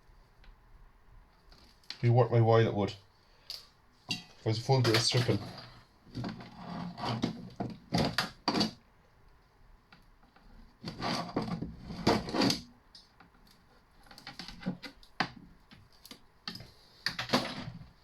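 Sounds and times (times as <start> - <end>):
blade scraping cable insulation: 5.0 - 8.8, 10.6 - 12.7.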